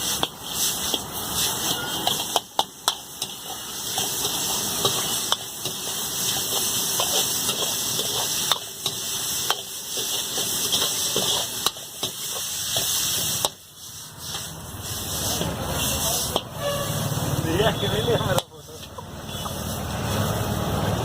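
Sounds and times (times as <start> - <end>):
metal utensil striking a pan: 0.0 - 13.6, 16.3 - 16.7
food sizzling: 0.0 - 21.0.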